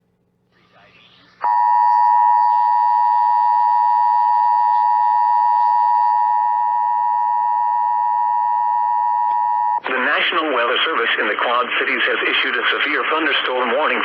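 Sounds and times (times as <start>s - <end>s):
steady two-tone alarm: 1.4s - 9.8s.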